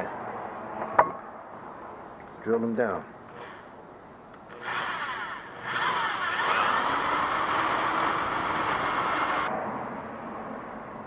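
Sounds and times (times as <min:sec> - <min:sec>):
electric drill boring through metal: 0:04.5 - 0:09.5.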